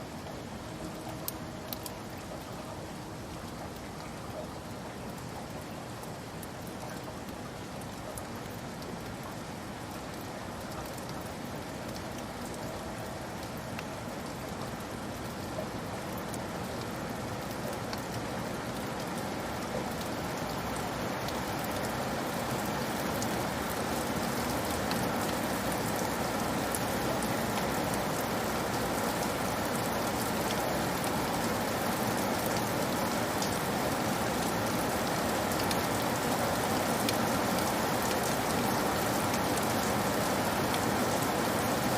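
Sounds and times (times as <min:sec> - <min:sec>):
rain pattering on a roof: 0:00.0 - 0:41.9.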